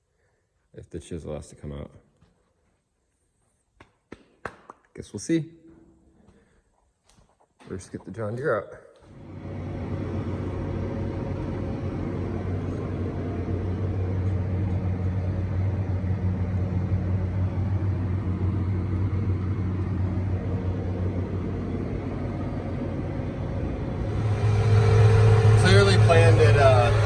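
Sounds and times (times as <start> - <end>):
tractor engine humming: 9.2 - 27.0.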